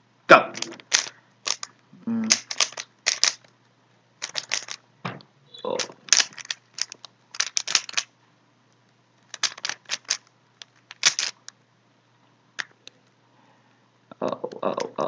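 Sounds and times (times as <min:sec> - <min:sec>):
puzzle cube plastic clicking: 0:00.6 - 0:01.7, 0:02.3 - 0:03.5, 0:04.2 - 0:04.8, 0:05.8 - 0:08.1, 0:09.2 - 0:11.6.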